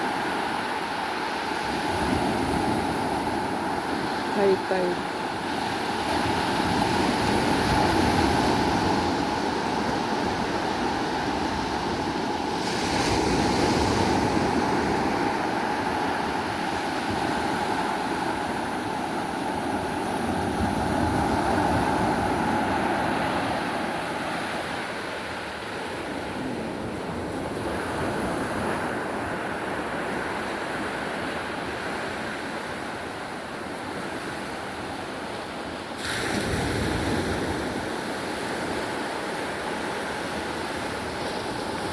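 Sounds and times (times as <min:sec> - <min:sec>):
sea waves breaking: 0:00.0 - 0:30.1.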